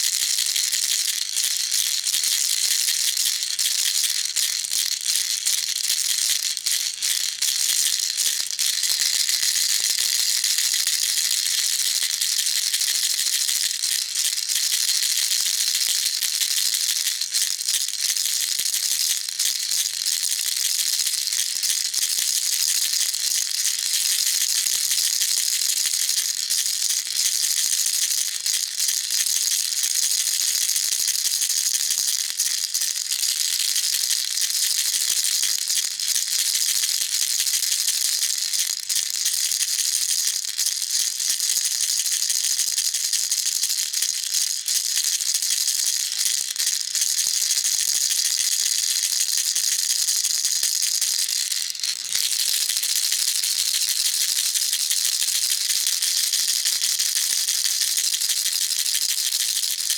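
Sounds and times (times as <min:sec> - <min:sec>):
baby rattle shaking: 0:00.1 - 0:18.5, 0:40.2 - 0:59.9.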